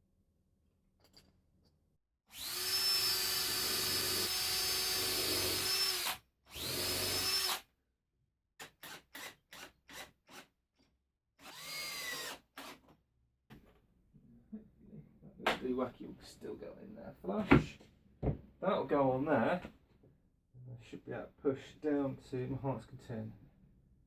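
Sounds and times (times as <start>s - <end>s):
power drill motor whining: 2.3s - 7.6s, 11.4s - 12.9s.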